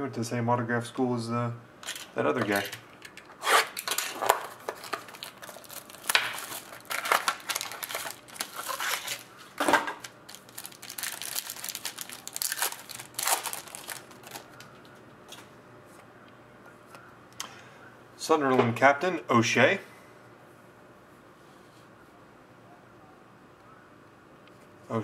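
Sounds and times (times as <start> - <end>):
plastic packaging crinkling: 1.9 - 2.8, 3.6 - 15.5.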